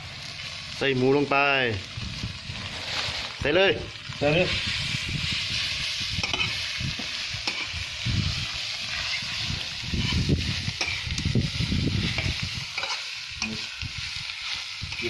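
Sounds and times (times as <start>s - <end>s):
meat sizzling in a pan: 0.0s - 15.0s
utensil scraping a pan: 6.2s - 6.6s, 12.1s - 13.7s.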